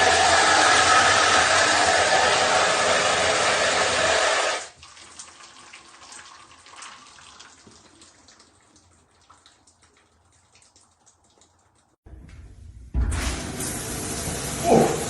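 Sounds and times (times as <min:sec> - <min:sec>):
water rushing from shower head: 0:00.0 - 0:04.7, 0:13.1 - 0:15.0.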